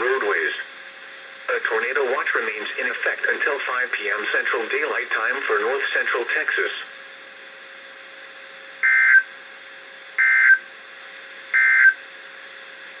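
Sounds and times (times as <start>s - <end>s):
faint radio hum: 0.0s - 0.8s, 1.4s - 7.0s.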